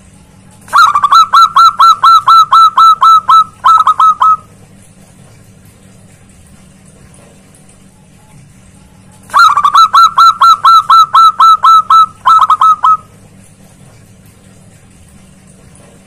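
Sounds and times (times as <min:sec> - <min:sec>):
dove singing: 0:00.7 - 0:04.5, 0:09.3 - 0:13.2.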